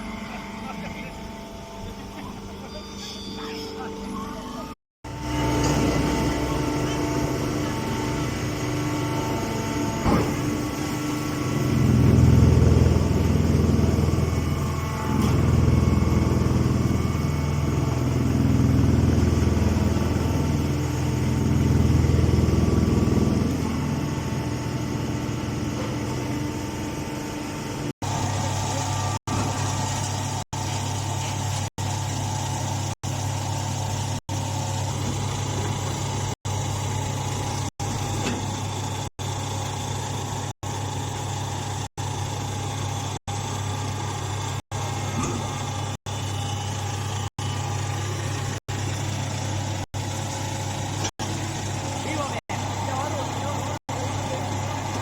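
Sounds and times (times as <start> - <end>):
baler machine humming: 3.6 - 55.0.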